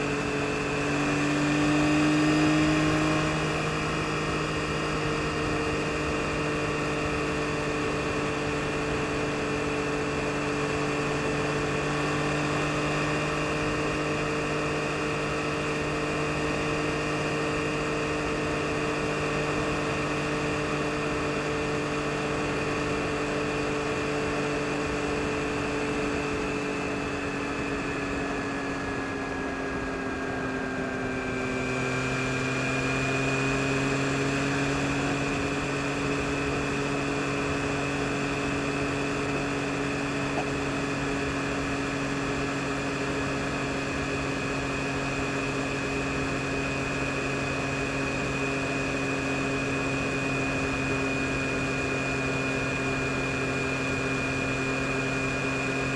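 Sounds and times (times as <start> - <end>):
motorcycle engine running: 0.0 - 55.9
wind and road noise: 0.0 - 55.9.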